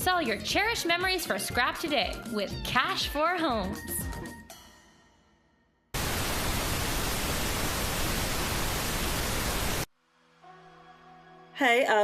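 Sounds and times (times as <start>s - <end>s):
television static hiss: 6.0s - 9.9s.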